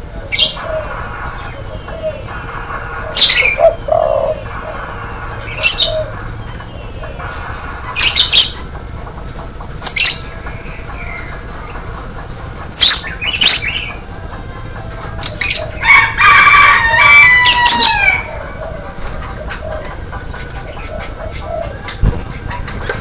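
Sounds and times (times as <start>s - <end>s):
harsh bird call: 15.2s - 18.8s.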